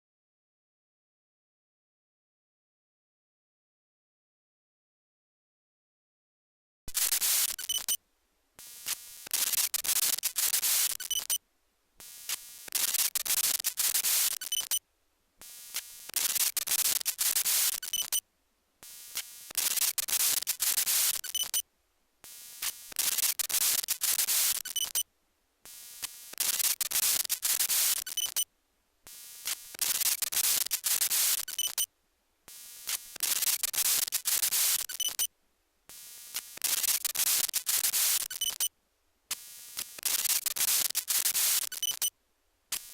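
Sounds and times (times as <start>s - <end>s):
white noise static bursts: 6.9s - 7.8s, 12.2s - 14.4s, 15.7s - 17.9s.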